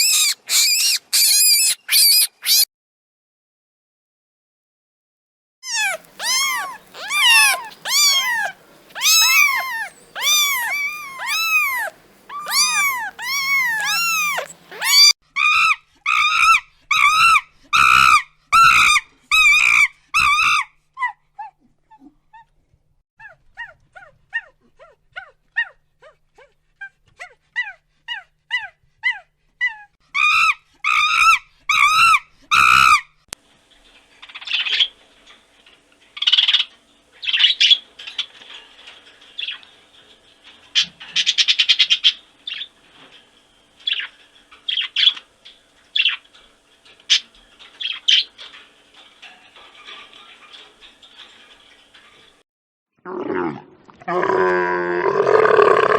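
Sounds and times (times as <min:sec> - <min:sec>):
dog yelping and whining: 0:00.0 - 0:02.6, 0:05.6 - 0:22.5, 0:23.2 - 0:33.0.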